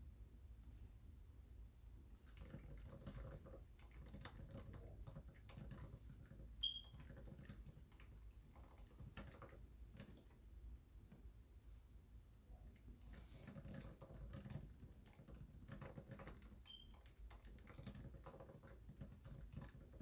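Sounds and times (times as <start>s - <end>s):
typing on computer keyboard: 2.2s - 10.4s, 13.4s - 20.0s.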